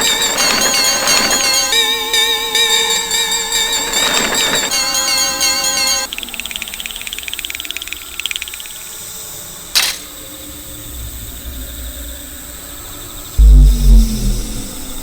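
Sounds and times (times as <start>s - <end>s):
fast chirping ticks: 3.8s - 9.2s
sharp click: 9.8s - 10.1s
loud deep boom: 13.4s - 15.0s
low rumble: 13.4s - 15.0s.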